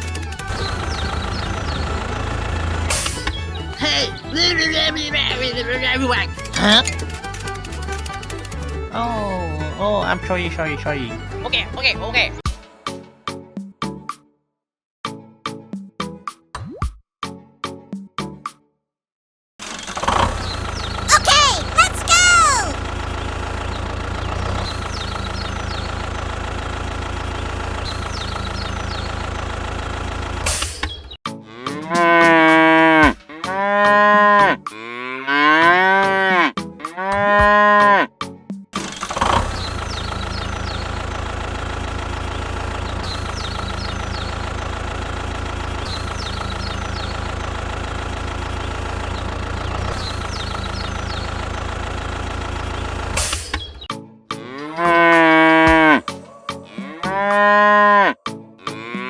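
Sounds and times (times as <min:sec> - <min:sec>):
cattle mooing: 0:56.8 - 0:58.1.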